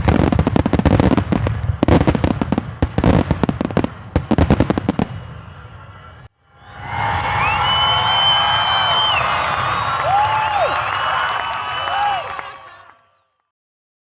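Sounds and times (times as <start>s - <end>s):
fireworks bangs and crackles: 0.0s - 6.3s.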